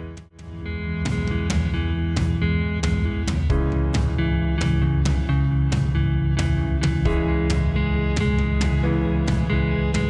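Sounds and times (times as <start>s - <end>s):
guitar strumming: 0.4s - 10.0s.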